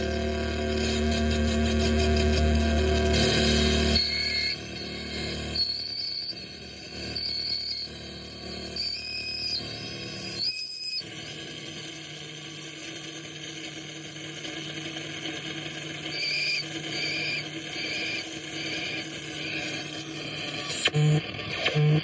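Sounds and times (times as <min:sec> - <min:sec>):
dense noisy synthesizer soundscape: 0:00.0 - 0:05.6
steady low drone: 0:00.0 - 0:05.6
high hooting tone pulses: 0:00.6 - 0:09.8.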